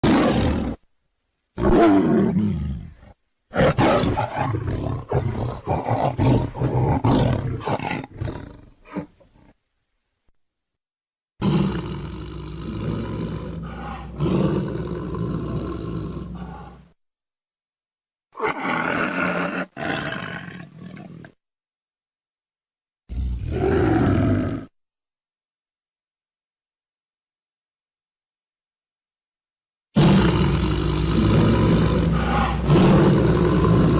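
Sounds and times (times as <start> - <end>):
tiger roaring: 0.0 - 0.8, 1.6 - 9.2, 11.4 - 17.0, 18.4 - 21.4, 23.1 - 24.7, 30.0 - 33.9
tiger growling: 1.6 - 9.6, 11.4 - 17.0, 18.4 - 21.4, 30.0 - 33.9.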